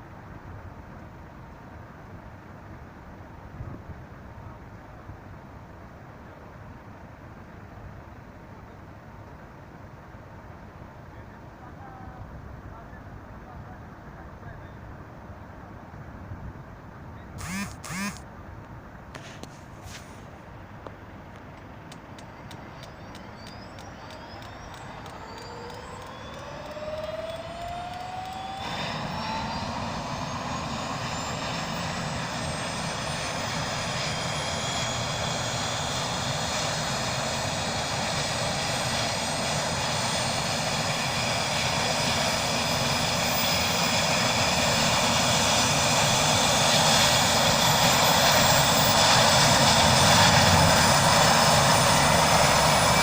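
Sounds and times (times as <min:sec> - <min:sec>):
helicopter turbine whine: 0:17.4 - 0:18.2, 0:21.7 - 0:53.0.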